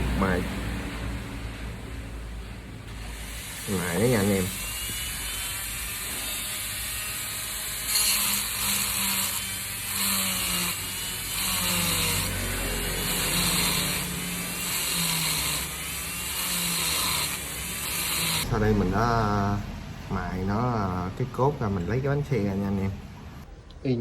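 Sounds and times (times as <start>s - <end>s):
rotary grinder grinding metal: 3.0s - 18.5s.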